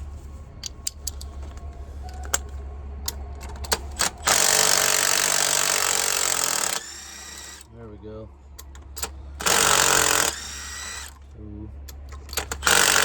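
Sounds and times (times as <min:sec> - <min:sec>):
metal clicks: 0:00.6 - 0:07.7, 0:08.6 - 0:11.2, 0:11.8 - 0:13.0
impact wrench hammering: 0:03.1 - 0:07.6, 0:08.6 - 0:11.2, 0:11.9 - 0:13.0.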